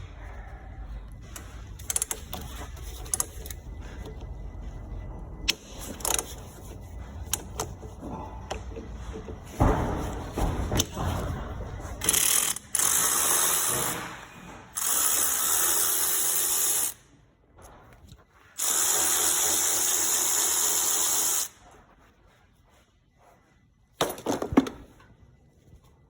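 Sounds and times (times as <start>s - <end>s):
knocks and clanks of tools: 7.2s - 12.6s, 13.4s - 14.8s, 24.0s - 25.1s
power tool whirring: 14.8s - 17.0s, 18.6s - 21.6s.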